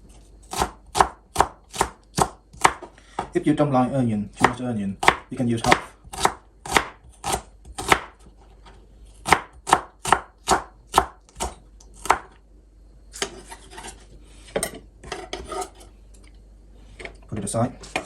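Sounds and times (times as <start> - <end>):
knife chopping onion on board: 0.5 - 3.3, 4.4 - 8.4, 9.2 - 12.4.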